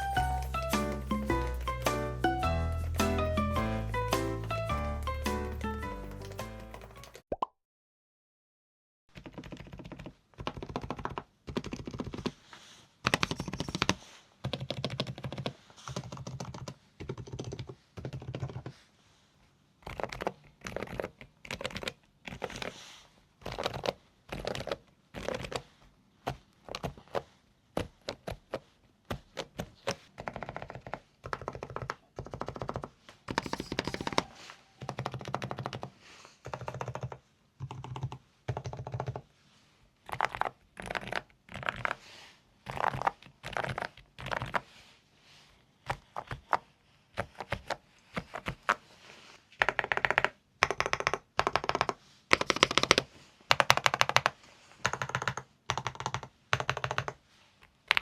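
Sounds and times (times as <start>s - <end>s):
mechanical keyboard typing: 9.2s - 12.3s, 13.0s - 18.7s, 19.8s - 22.7s, 23.4s - 25.6s, 30.2s - 39.2s, 40.1s - 42.0s, 42.7s - 44.6s, 49.6s - 57.2s.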